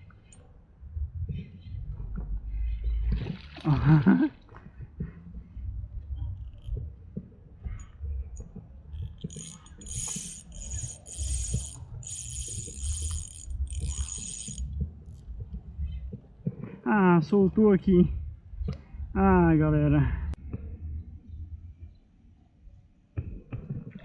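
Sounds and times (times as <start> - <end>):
fishing reel whirring: 6.1 - 6.9, 7.8 - 15.4.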